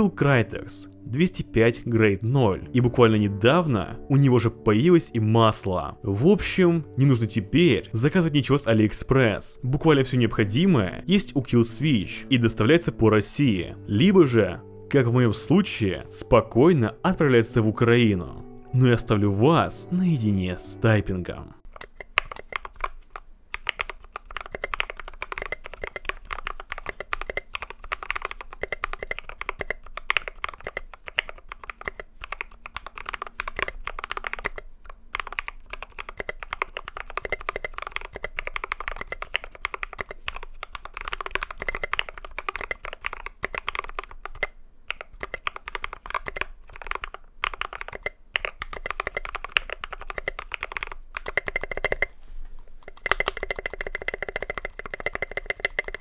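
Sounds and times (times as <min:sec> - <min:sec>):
mechanical keyboard typing: 0:21.7 - 0:52.1, 0:52.9 - 0:56.0.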